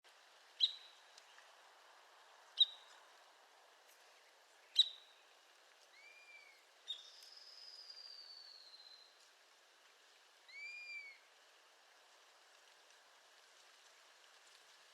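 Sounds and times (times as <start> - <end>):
bird whistles: 6.0 - 9.1, 10.5 - 11.2.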